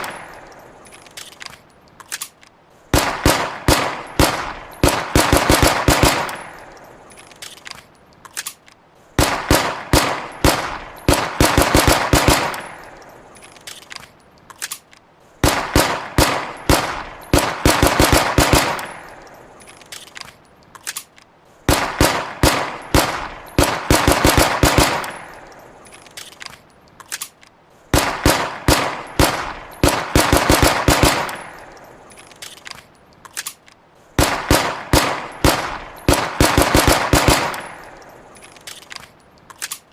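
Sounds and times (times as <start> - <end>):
pistol gunfire bursts: 2.2 - 7.6, 9.2 - 13.9, 14.7 - 20.1, 21.7 - 26.4, 27.2 - 32.7, 34.2 - 39.0.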